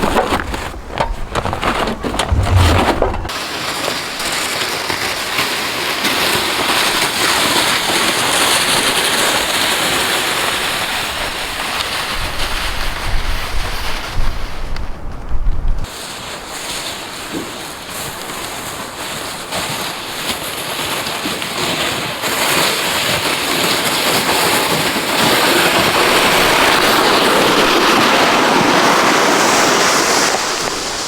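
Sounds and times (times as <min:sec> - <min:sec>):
crunching: 0:00.0 - 0:03.3
wind and blowing snow: 0:00.0 - 0:03.3
wind rumbling on microphone: 0:00.0 - 0:03.3, 0:12.1 - 0:15.9.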